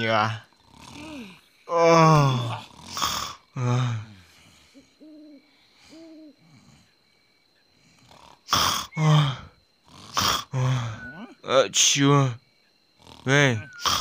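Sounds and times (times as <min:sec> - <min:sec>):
cartoon pig snoring: 0:00.6 - 0:01.4, 0:02.3 - 0:03.8, 0:07.9 - 0:11.0, 0:13.0 - 0:14.0
whistle-like breath tones: 0:10.6 - 0:11.3, 0:13.6 - 0:14.0.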